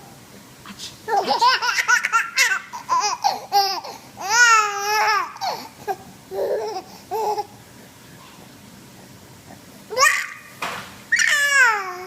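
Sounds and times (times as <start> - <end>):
baby giggling squeals: 11.1 - 12.0.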